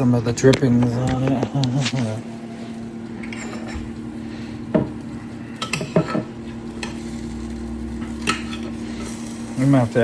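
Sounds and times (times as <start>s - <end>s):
steady low hum: 0.0s - 10.0s
utensil scraping roasting pan: 5.5s - 10.0s.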